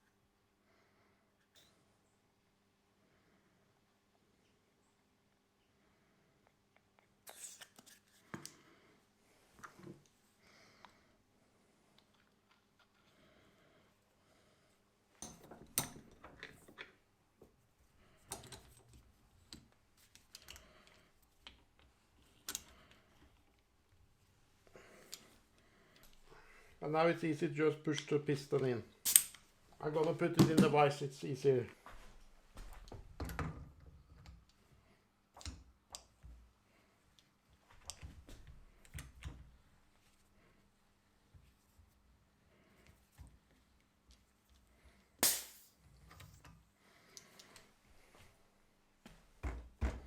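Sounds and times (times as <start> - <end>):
metal tool clicks and knocks: 15.2 - 16.9.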